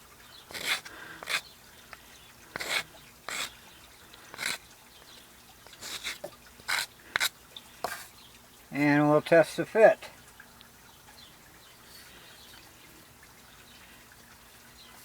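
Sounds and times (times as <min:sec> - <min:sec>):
hand scraping wood: 0:00.5 - 0:01.4, 0:02.5 - 0:03.6, 0:04.3 - 0:04.6, 0:05.8 - 0:08.1.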